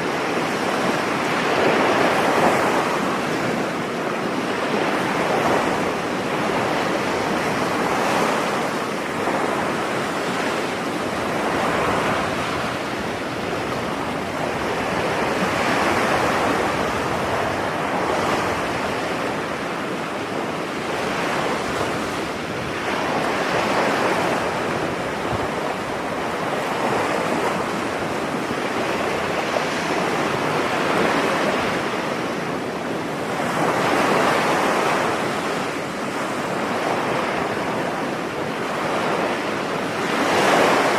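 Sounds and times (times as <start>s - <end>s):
ocean waves breaking on beach: 0.0s - 40.9s.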